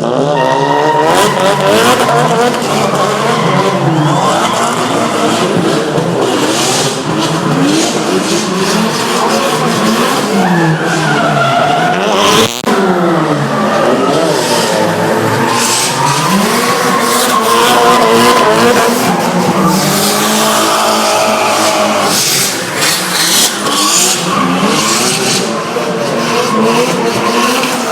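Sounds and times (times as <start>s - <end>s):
car engines revving: 0.0s - 27.9s
tyres squealing: 0.4s - 5.5s.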